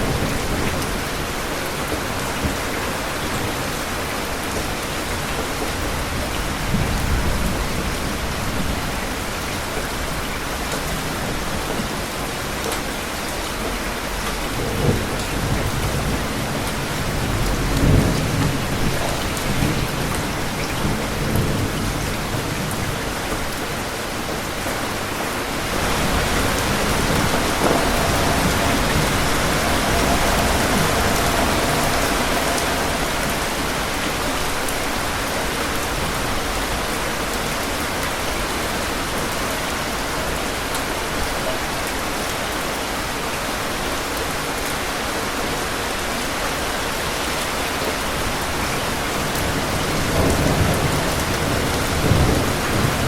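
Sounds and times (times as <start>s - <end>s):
heavy rain: 0.0s - 53.0s
thunder rolling: 13.6s - 23.6s, 24.2s - 39.7s.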